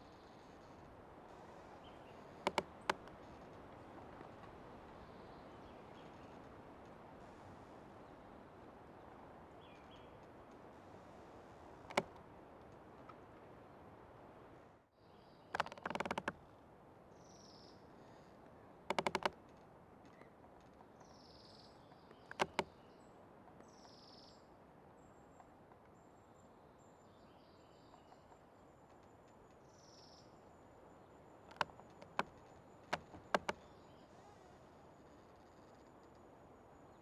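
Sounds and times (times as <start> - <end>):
tree creaking in the wind: 0.0 - 14.4, 15.5 - 16.6, 17.9 - 21.1, 22.0 - 22.9, 30.6 - 37.0
small birds chirping: 9.0 - 10.2, 20.9 - 36.0.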